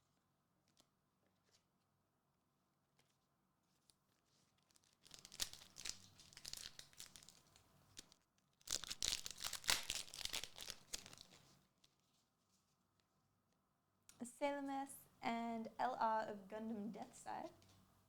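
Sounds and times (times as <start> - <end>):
wrappers torn and crinkled: 4.6 - 11.5.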